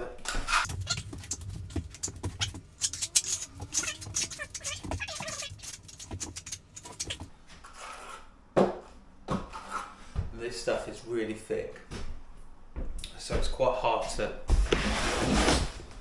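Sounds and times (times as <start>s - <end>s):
short squeaks: 0.6s - 7.2s
trowel scraping adhesive: 0.6s - 8.3s.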